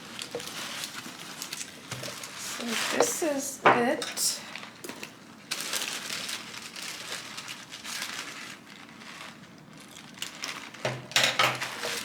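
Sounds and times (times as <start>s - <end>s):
packing paper crinkling: 0.0s - 3.4s, 4.6s - 10.9s.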